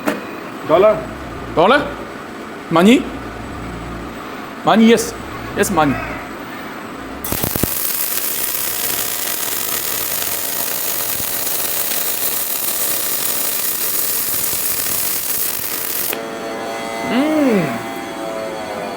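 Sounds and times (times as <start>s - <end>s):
welding arc crackling and hissing: 7.2s - 16.2s.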